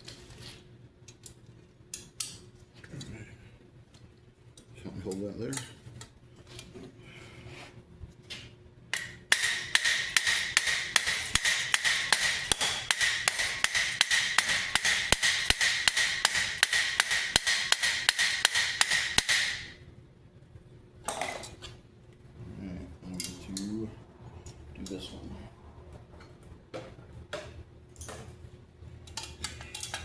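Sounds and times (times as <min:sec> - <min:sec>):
hammer striking steel helmet: 0:09.0 - 0:19.7.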